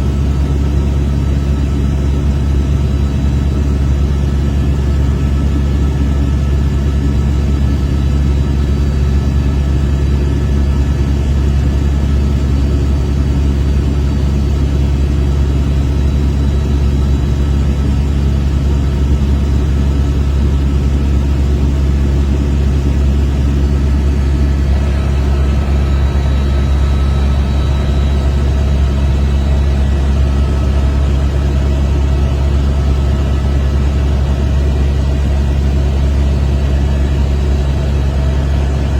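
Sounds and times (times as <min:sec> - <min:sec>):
helicopter drone: 0:00.0 - 0:38.9
faint whining tones: 0:22.6 - 0:33.9.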